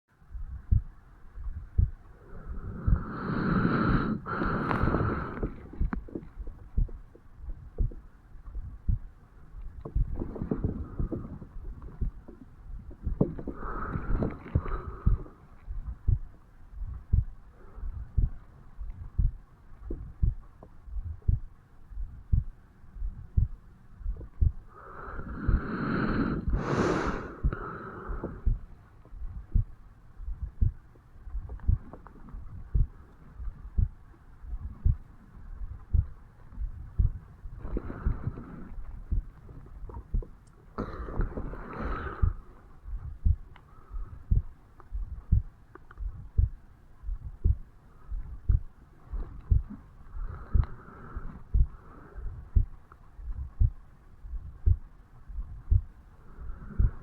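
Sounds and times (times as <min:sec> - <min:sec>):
heartbeat thumps: 0:00.2 - 0:03.2, 0:03.8 - 0:57.0
breath sound: 0:01.8 - 0:06.9, 0:10.0 - 0:12.2, 0:12.8 - 0:16.2, 0:16.8 - 0:18.4, 0:23.0 - 0:29.7, 0:35.8 - 0:45.3, 0:46.1 - 0:53.7, 0:55.7 - 0:57.0.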